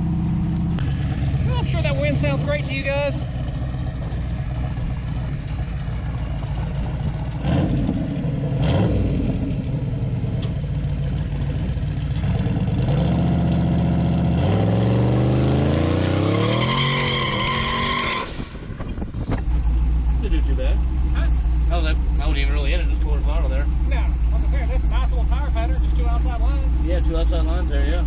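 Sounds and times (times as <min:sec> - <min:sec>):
truck engine revving: 0:00.0 - 0:28.0
tires squealing on concrete: 0:14.3 - 0:18.8.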